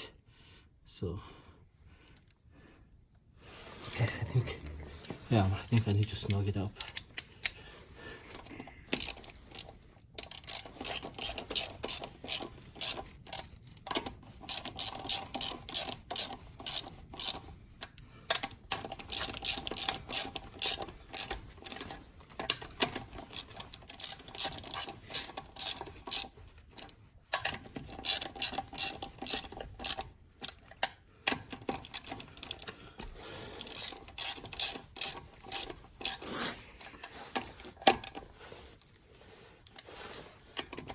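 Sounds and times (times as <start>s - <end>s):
ratchet wrench clicking: 8.9s - 26.3s, 27.3s - 32.8s, 33.6s - 36.3s.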